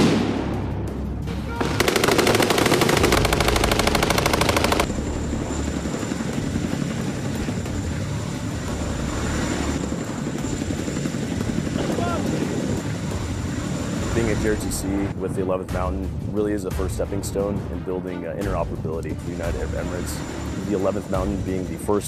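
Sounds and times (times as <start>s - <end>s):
machine gun firing: 1.6s - 5.0s.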